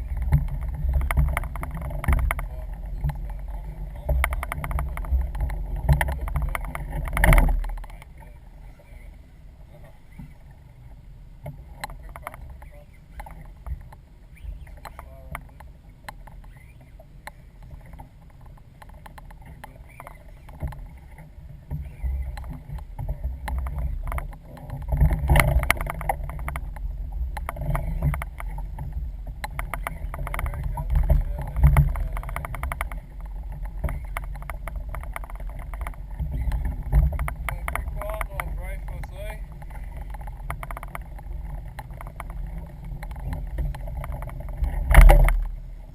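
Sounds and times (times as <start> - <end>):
knocks and clicks from hull: 0.0 - 8.2, 17.2 - 45.6
water rumbling: 0.0 - 45.9
wind noise: 0.0 - 45.9.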